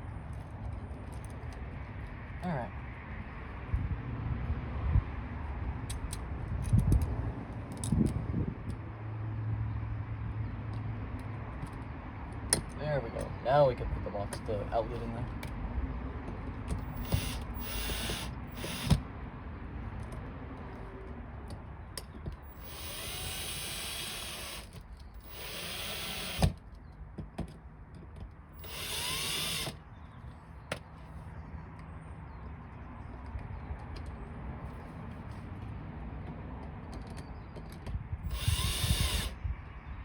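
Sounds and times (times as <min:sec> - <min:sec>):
power drill-driver running: 0:16.8 - 0:19.0, 0:22.4 - 0:26.6, 0:28.6 - 0:29.8, 0:38.2 - 0:39.4.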